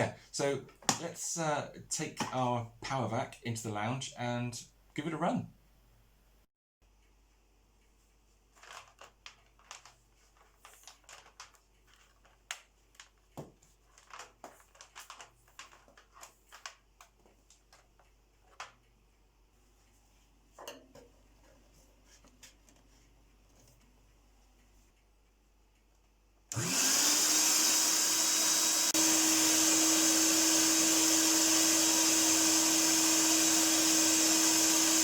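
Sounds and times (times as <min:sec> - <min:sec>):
vacuum cleaner being handled: 0:08.6 - 0:18.7.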